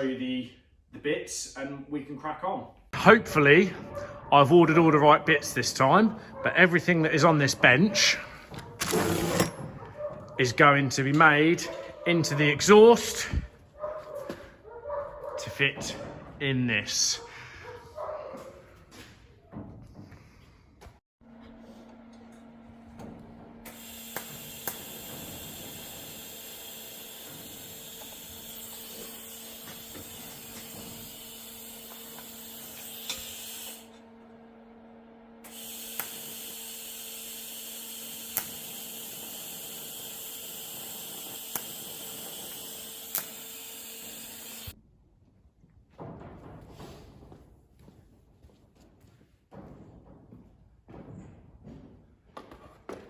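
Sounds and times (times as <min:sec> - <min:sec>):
low hum of welder: 0:21.3 - 0:44.8
welding arc hissing: 0:23.7 - 0:33.9, 0:35.5 - 0:44.8
sharp clicks: 0:43.1 - 0:43.4.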